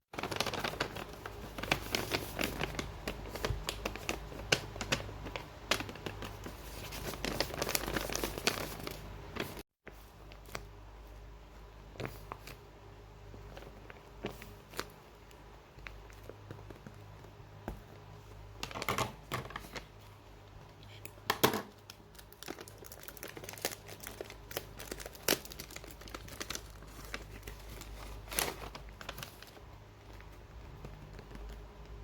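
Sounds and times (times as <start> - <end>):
plastic wrapping crinkling: 0.2 - 9.6, 21.7 - 32.0.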